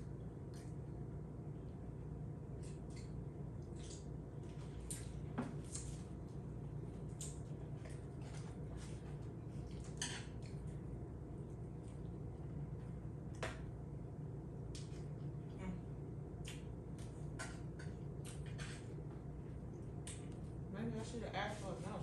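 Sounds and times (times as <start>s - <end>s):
steady low hum: 0.0s - 22.0s
chewing with wet mouth clicks: 0.2s - 1.0s, 2.5s - 6.1s, 6.9s - 8.6s, 9.2s - 12.3s, 16.3s - 19.0s, 19.6s - 20.5s.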